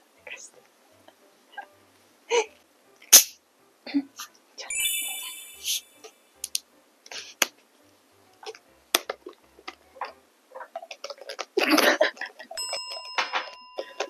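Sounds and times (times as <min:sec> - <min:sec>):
steady high-pitched tone: 0:04.7 - 0:06.3.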